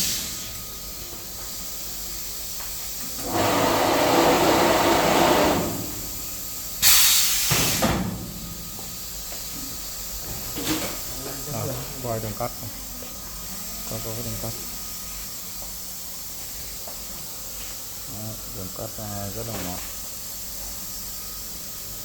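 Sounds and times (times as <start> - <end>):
loud hiss: 0.0 - 22.0
fabric cutting machine: 3.2 - 5.9.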